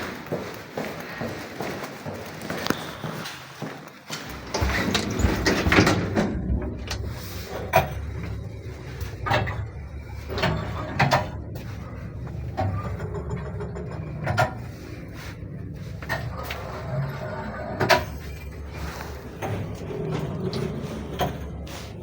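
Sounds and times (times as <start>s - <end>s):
elevator low hum: 2.7s - 22.0s
elevator cabin creaks and knocks: 4.1s - 21.7s.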